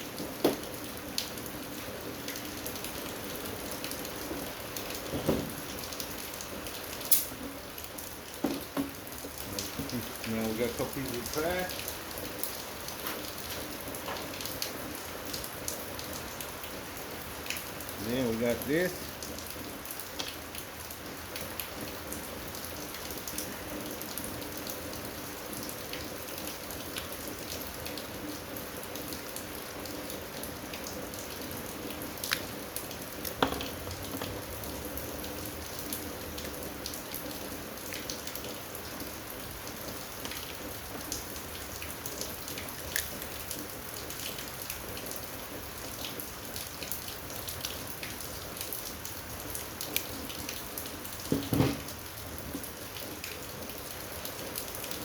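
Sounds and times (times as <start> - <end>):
rain pattering: 0.0 - 55.0.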